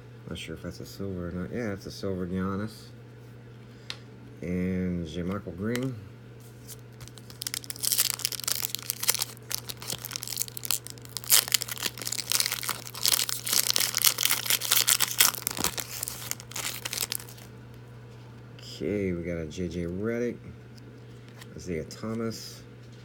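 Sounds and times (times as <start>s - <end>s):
wrapper being torn and crinkled: 7.0s - 17.5s.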